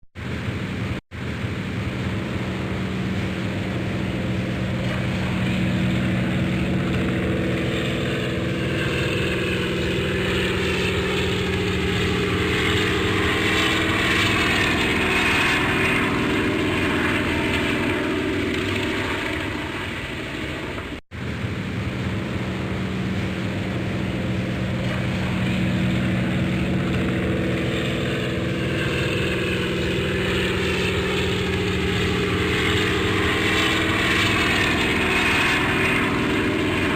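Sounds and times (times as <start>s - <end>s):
propeller airplane engine: 0.2s - 36.9s.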